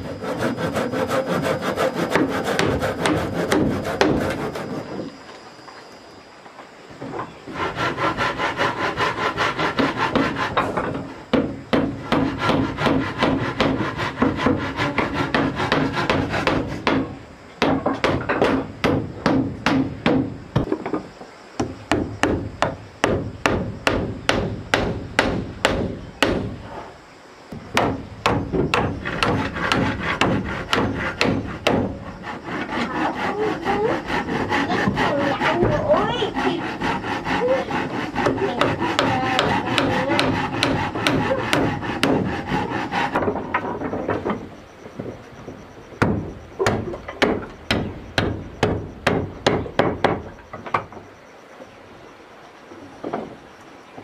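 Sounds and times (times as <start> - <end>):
hand tool strokes on wood: 0.0 - 5.5, 7.4 - 11.3, 11.9 - 16.9, 28.7 - 43.9.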